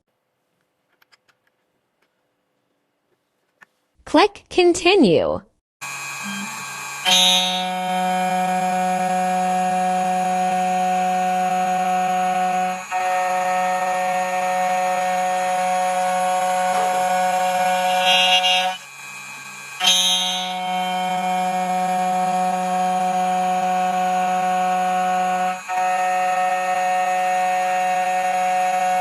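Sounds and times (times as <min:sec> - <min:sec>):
key cutting machine whining: 0:05.8 - 0:29.0.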